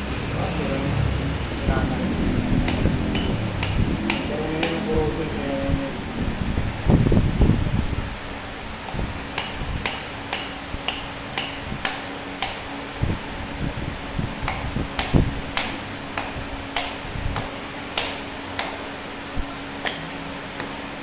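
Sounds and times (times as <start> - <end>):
hammer striking metal: 2.2 - 5.2, 8.9 - 12.8, 14.4 - 18.9.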